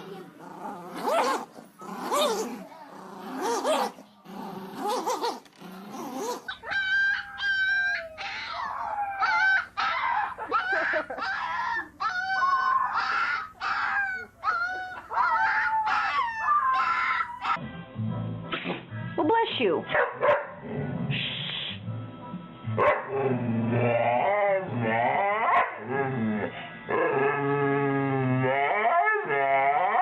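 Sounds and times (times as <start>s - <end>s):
dog whine-howling: 4.8s - 17.6s.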